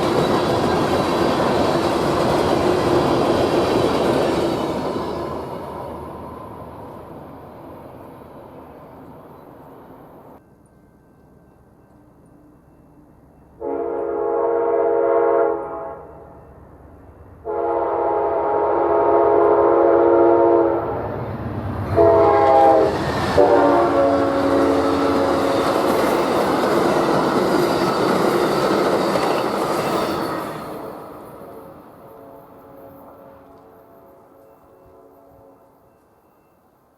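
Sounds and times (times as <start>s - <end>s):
train wheels on rail: 0.0s - 13.6s, 20.8s - 36.9s
locomotive air horn blasts: 13.6s - 16.2s, 17.4s - 21.0s, 21.9s - 25.4s, 31.5s - 35.8s.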